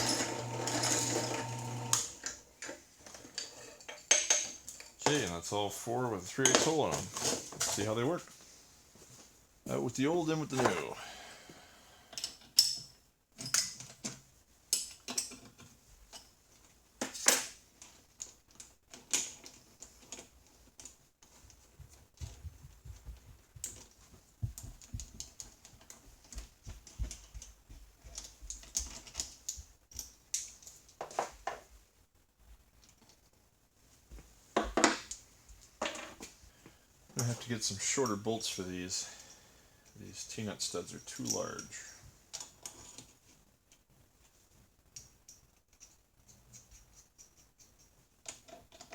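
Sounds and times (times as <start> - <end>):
small steel parts clinking: 2.6 - 5.2, 12.1 - 14.1, 14.7 - 16.4, 28.2 - 31.2, 40.7 - 43.1.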